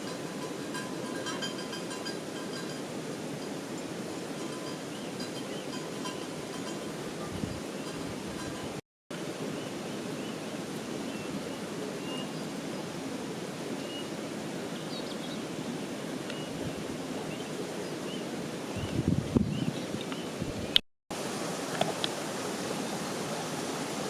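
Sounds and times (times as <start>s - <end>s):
rushing stream: 0.0s - 24.0s.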